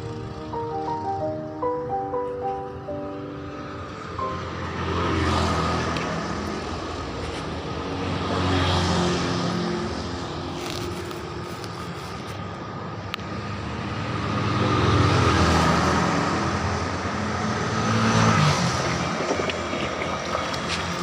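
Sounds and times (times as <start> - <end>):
vehicle engine passing by: 3.5 - 11.5, 13.4 - 21.0.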